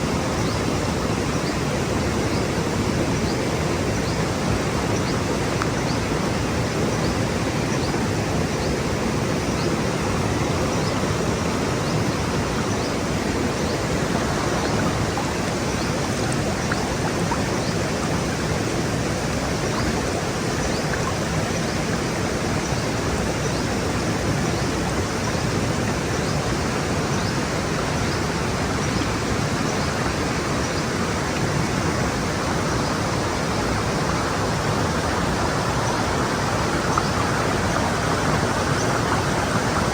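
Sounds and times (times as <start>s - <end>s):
stream flowing over rocks: 0.0s - 39.9s.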